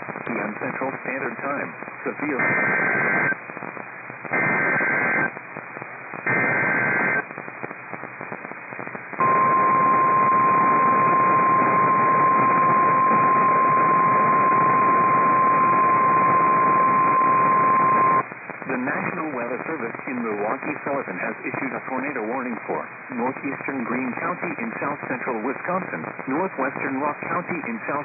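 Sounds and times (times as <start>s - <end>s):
radio static hiss: 0.0s - 28.0s
steady warning alarm tone: 9.2s - 18.2s.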